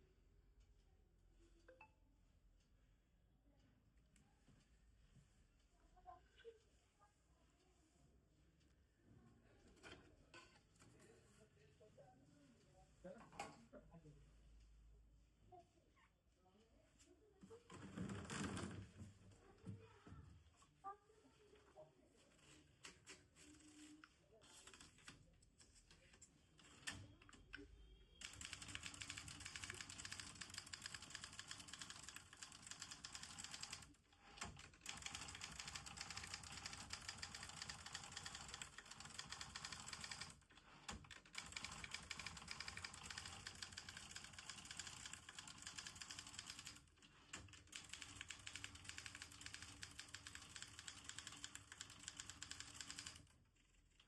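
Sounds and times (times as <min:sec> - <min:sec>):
typewriter keystrokes: 0:28.2 - 0:53.3.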